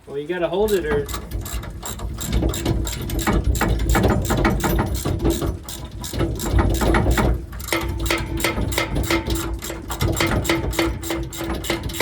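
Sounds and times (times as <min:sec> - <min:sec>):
ratchet wrench clicking: 0:00.6 - 0:12.0.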